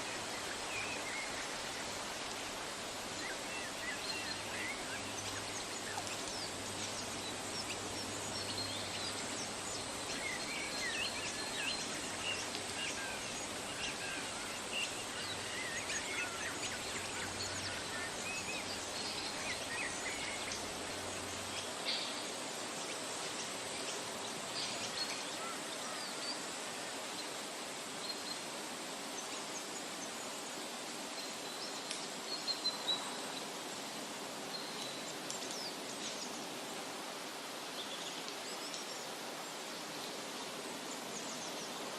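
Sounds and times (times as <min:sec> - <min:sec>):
small birds chirping: 0:00.0 - 0:30.3
steady outdoor hiss: 0:00.0 - 0:41.9.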